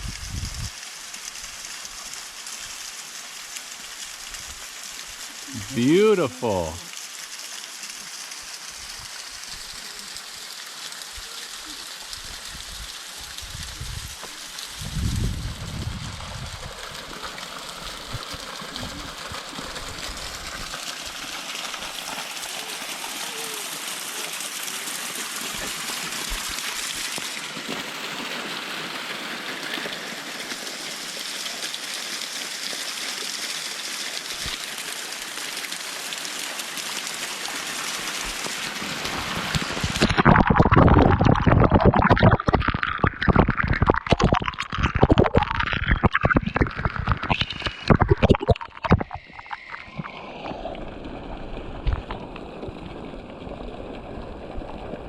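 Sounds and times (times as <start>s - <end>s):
waterfall rushing: 5.5s - 6.9s, 37.2s - 50.6s.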